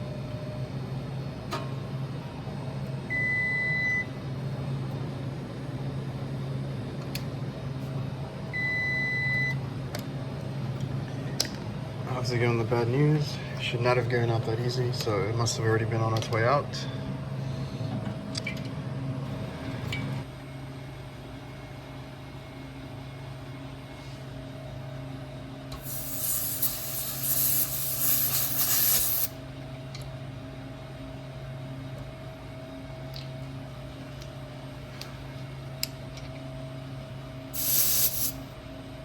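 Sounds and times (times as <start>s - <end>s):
low machine hum: 0.0s - 39.0s
pressurized gas hissing: 25.7s - 29.4s, 37.6s - 38.5s.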